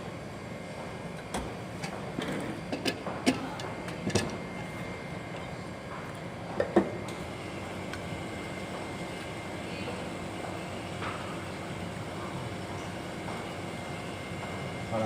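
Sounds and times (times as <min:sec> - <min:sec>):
steady machine hum: 0:00.0 - 0:15.0.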